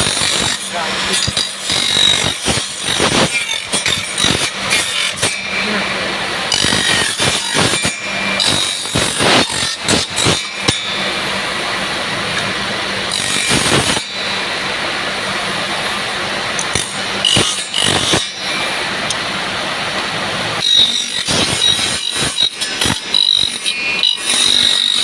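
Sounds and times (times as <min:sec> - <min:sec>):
sharp knocks and scrapes: 0:00.0 - 0:05.5
power tool running on wood: 0:00.0 - 0:19.3.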